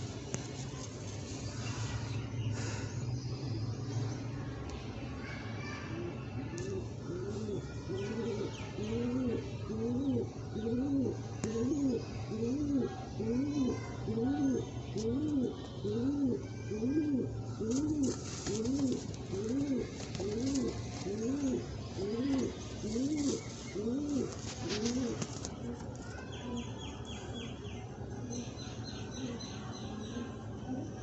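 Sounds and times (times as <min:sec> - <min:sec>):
pigeon cooing: 0:06.6 - 0:25.6.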